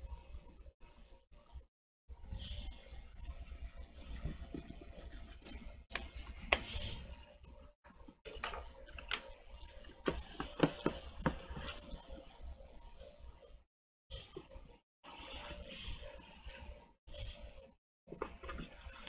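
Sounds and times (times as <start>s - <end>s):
sharp taps and knocks: 10.0s - 11.7s.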